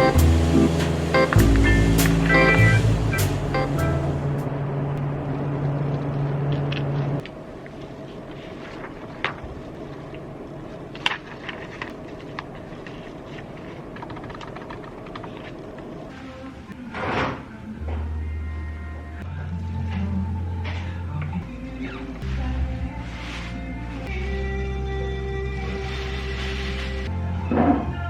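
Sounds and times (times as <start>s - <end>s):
background music with light percussion: 0.0s - 4.3s
steady low hum: 0.0s - 16.8s.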